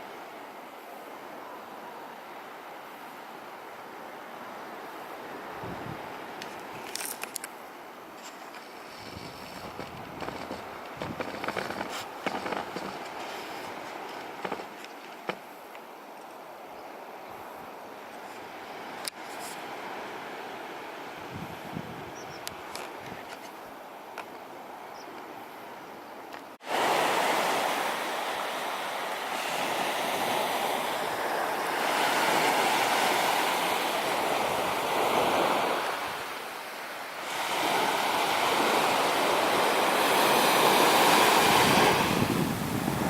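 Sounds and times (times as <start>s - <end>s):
sea surf breaking on beach: 0.0s - 15.7s, 26.6s - 43.0s.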